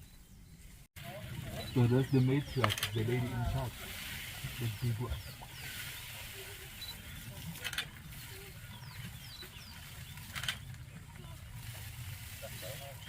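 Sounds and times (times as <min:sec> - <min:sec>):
small birds chirping: 0:00.0 - 0:13.0
brief crackles: 0:10.1 - 0:10.8.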